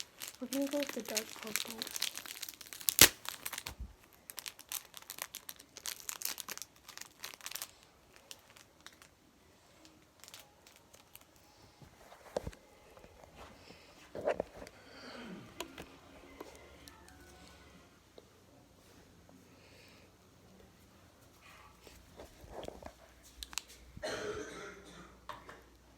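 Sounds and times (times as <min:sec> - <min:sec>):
plastic packaging crinkling: 0:00.0 - 0:09.2, 0:09.8 - 0:13.3, 0:22.2 - 0:23.8.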